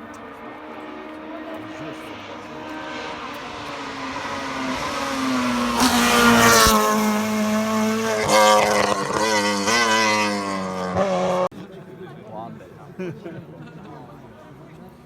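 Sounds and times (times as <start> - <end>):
race car engine passing: 0.2 - 11.5.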